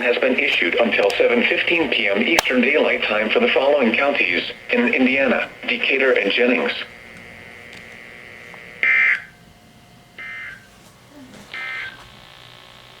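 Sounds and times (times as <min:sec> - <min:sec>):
buzzy digital data tones: 0:01.4 - 0:09.4, 0:11.5 - 0:13.0.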